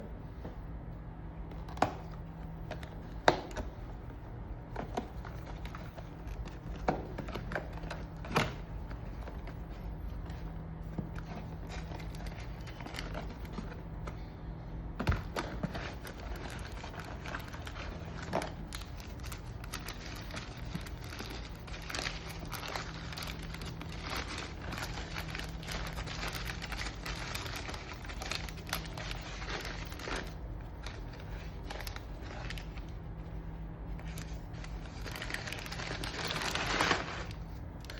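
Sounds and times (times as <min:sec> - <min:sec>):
steady low hum: 0:00.0 - 0:37.9
food packaging crinkling: 0:11.1 - 0:13.9, 0:15.2 - 0:32.9, 0:34.0 - 0:37.9.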